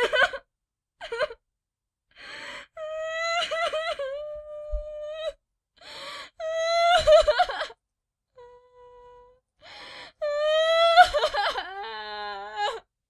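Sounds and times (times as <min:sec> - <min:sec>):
gasping in-breath: 0:02.1 - 0:02.8, 0:05.8 - 0:06.4, 0:09.6 - 0:10.2
woman crying and wailing: 0:02.9 - 0:05.1, 0:06.5 - 0:07.8, 0:10.2 - 0:12.8.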